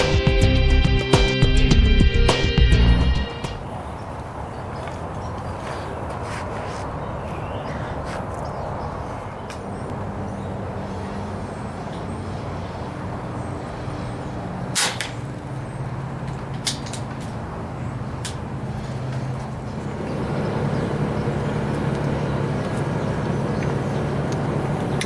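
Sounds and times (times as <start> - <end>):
air rifle shot: 14.7 - 15.2
steady low hum: 19.6 - 25.0.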